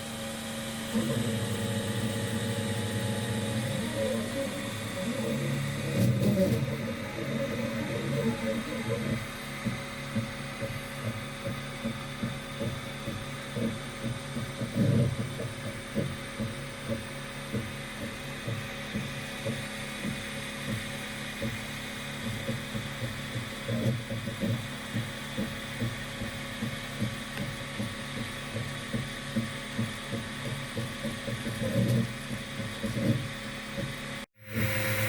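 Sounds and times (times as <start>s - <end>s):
stepper motors buzzing: 0.7s - 35.0s
steady high whine: 0.9s - 33.6s, 34.2s - 35.0s.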